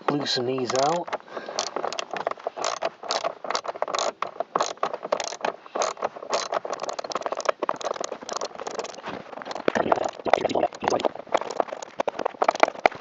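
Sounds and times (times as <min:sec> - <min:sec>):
hand ratchet clicking and scraping: 0:00.0 - 0:13.0.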